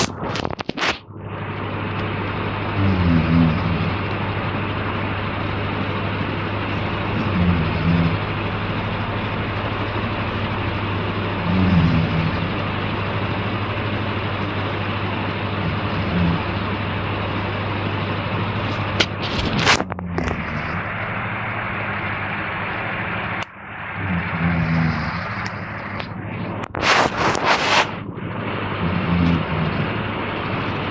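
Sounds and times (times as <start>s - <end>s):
man snoring: 2.7s - 4.2s, 7.1s - 8.3s, 11.4s - 12.7s, 15.6s - 16.7s, 19.6s - 21.2s, 24.0s - 26.1s, 28.8s - 30.0s.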